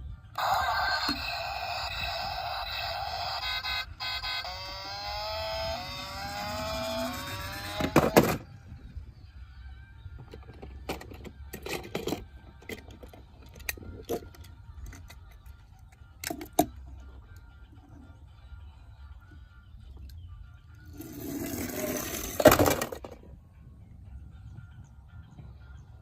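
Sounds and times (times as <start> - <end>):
low hum: 0.0 - 10.6
electronic tune with sliding pitches: 0.4 - 8.1
toy cars clicking and knocking: 0.6 - 8.4, 10.3 - 15.6, 21.0 - 23.2.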